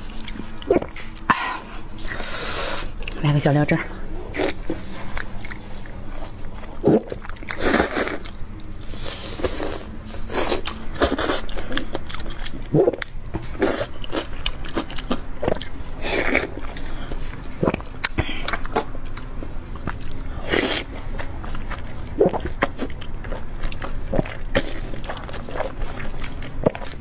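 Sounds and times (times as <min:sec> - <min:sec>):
low steady hum: 0:00.0 - 0:27.0
chewing and mouth smacks: 0:04.5 - 0:08.8.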